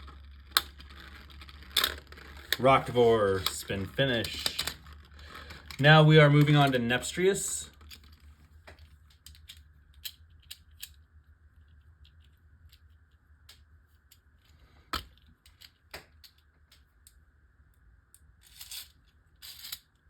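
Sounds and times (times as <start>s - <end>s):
small plastic pieces clicking: 7.7s - 11.0s.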